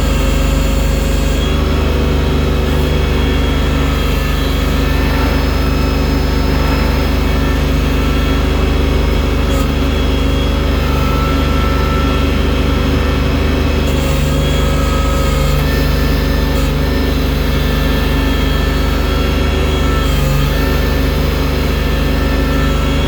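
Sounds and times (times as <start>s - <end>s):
loader engine droning: 0.0s - 23.0s.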